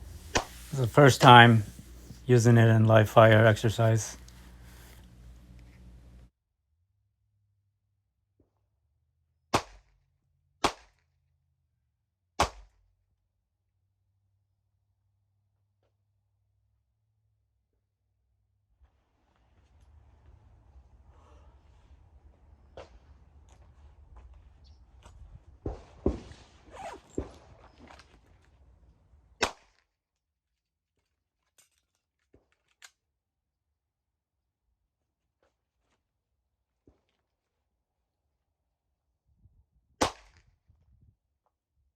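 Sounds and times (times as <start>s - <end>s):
rustling: 0.0s - 2.4s, 4.0s - 6.3s
pistol shot: 29.4s - 29.7s, 40.0s - 40.3s.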